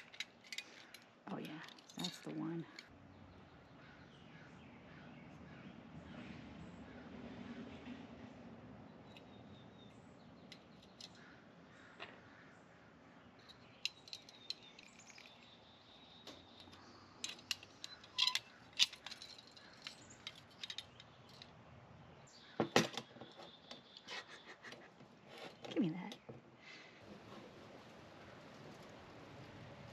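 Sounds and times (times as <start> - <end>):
metal hardware clatter: 0.0 - 2.9, 13.4 - 15.5, 16.3 - 21.5
small metal hardware clinking: 0.0 - 2.9, 13.4 - 15.6, 16.2 - 21.6.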